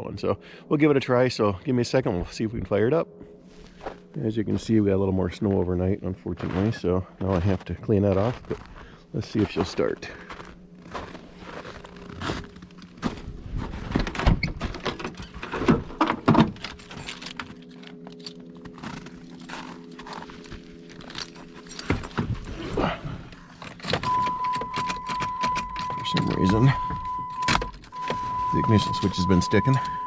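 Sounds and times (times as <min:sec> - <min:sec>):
keys jangling in ignition: 0:16.5 - 0:30.0
electronic warning tone: 0:24.0 - 0:30.0.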